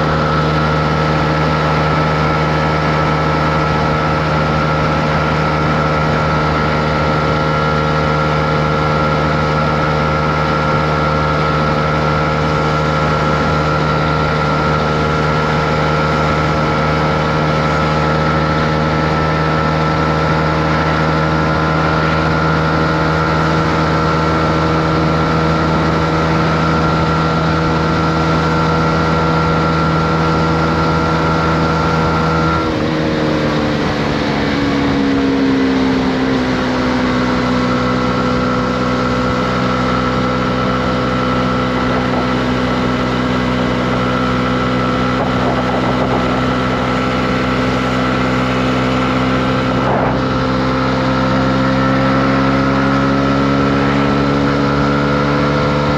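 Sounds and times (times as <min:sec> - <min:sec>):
motorcycle engine running: 0:00.0 - 0:55.9.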